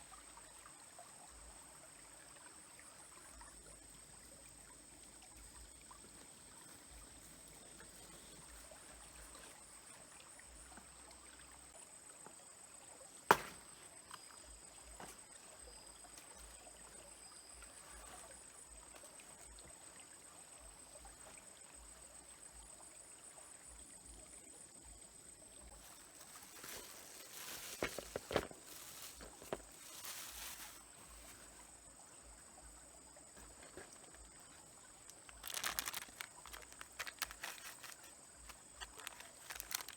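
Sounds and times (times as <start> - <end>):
stream trickling faintly: 0.0 - 39.9
knocks and rustling: 26.2 - 30.9, 35.1 - 39.9.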